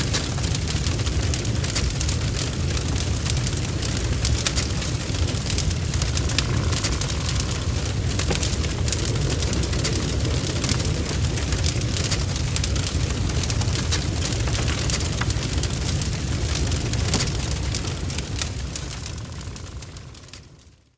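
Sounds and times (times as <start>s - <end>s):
fire crackling and spitting: 0.0s - 20.7s
fire roaring: 0.0s - 20.9s.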